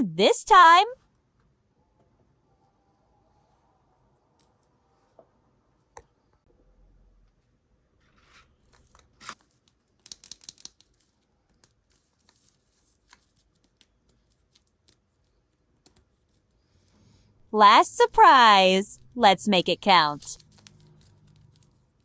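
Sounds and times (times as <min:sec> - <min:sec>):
packaging crinkling and tearing: 0:08.8 - 0:11.0.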